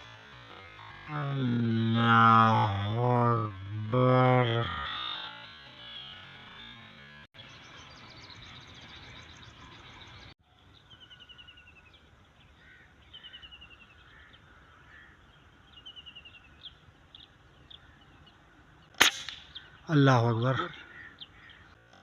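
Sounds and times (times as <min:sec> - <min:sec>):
birds chirping: 0:00.0 - 0:22.0
bird trilling: 0:12.6 - 0:21.8.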